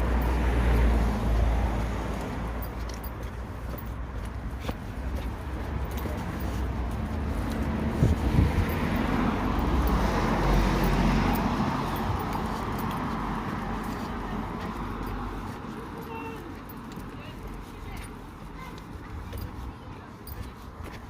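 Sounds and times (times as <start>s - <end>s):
car passing by: 6.2s - 15.6s
wind rumbling on microphone: 7.1s - 10.4s.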